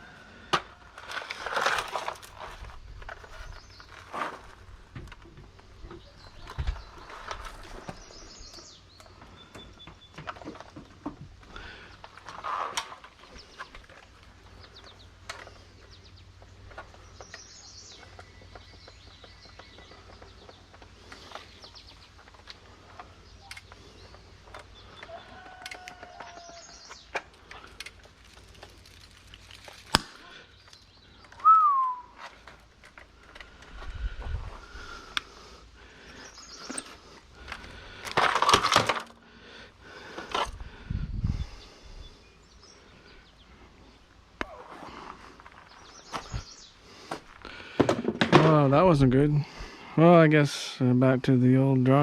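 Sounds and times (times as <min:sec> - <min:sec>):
birds chirping: 0:02.4 - 0:52.0.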